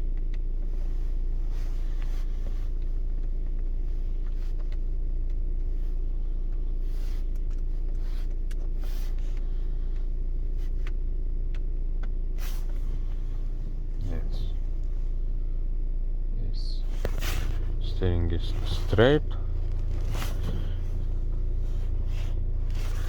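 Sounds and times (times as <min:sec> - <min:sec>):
car engine idling: 0:00.0 - 0:23.0.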